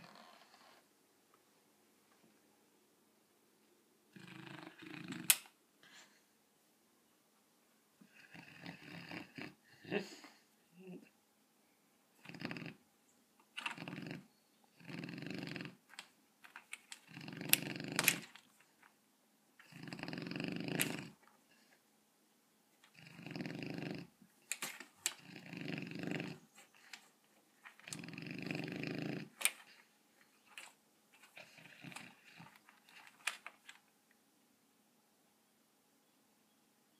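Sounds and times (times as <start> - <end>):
dog snoring: 0.0 - 0.9, 4.1 - 5.3, 8.0 - 11.1, 12.2 - 12.8, 13.6 - 15.8, 17.0 - 18.3, 19.6 - 21.7, 22.9 - 24.2, 25.2 - 27.0, 27.8 - 29.8, 31.3 - 33.1
sharp clicks: 5.1 - 5.5.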